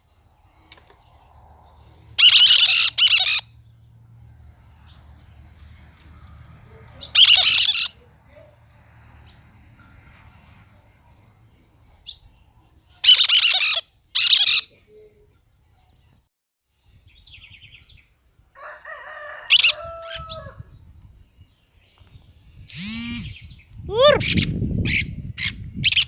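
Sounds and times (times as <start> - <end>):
parakeets chattering and chirping: 1.9 - 3.5, 6.9 - 8.1, 13.0 - 14.8
parakeet sweeping call: 2.2 - 3.4, 7.0 - 8.0, 22.7 - 23.4
parakeets screeching: 2.2 - 3.5, 7.0 - 8.0, 13.0 - 14.7.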